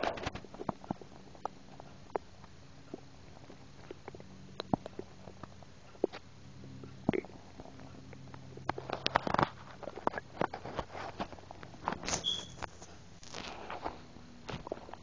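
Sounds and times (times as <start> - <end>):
stomach gurgling: 0.0 - 6.2, 6.8 - 11.5.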